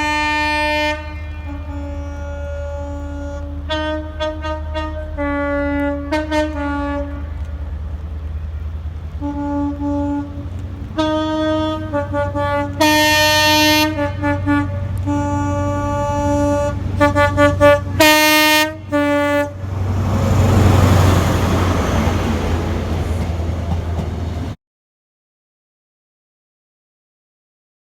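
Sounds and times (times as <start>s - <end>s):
train horn playing a tune: 0.0s - 7.6s, 9.2s - 19.7s
rush of passing train: 0.0s - 24.6s
low engine hum: 0.3s - 24.6s.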